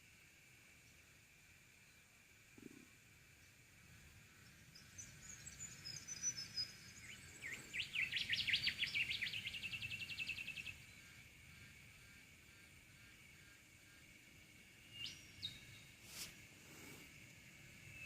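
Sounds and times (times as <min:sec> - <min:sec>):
steady high hum: 0:00.0 - 0:18.0
bird song with trill: 0:04.2 - 0:16.0, 0:17.2 - 0:18.0.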